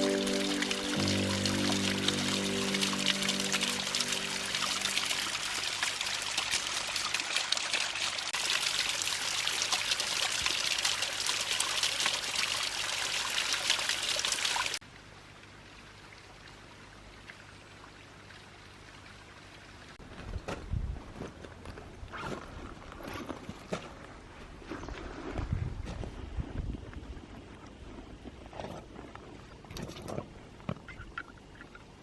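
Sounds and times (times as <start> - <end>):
faint outdoor hiss: 0.0 - 6.2
rushing water: 0.0 - 14.8.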